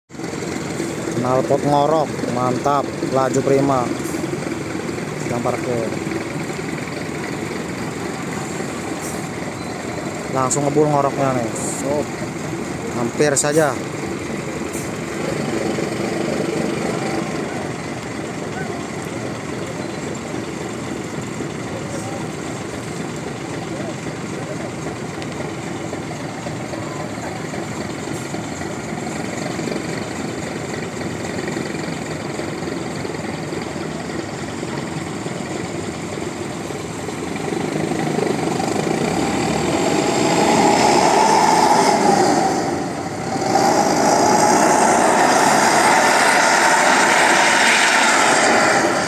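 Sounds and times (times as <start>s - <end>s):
bus engine with growling exhaust: 0.1s - 49.0s.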